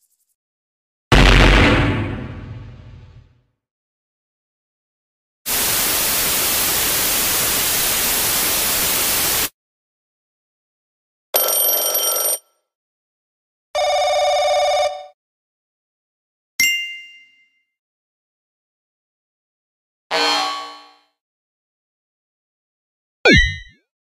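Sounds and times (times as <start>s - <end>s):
steady rain hissing: 5.5s - 9.5s
electronic telephone ringer trill: 11.4s - 12.4s, 13.8s - 15.0s
telephone bell ringing: 11.4s - 12.6s, 13.8s - 15.1s.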